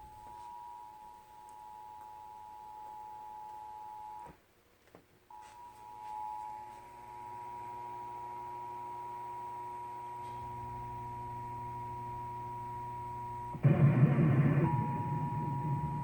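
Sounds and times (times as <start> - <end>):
loud noise burst: 13.5 - 16.0.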